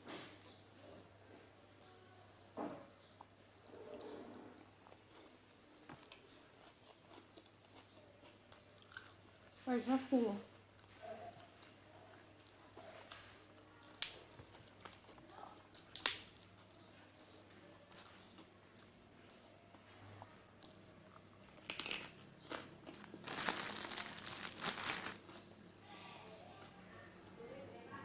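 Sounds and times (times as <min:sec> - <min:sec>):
plastic or paper crinkling: 0:22.9 - 0:25.4.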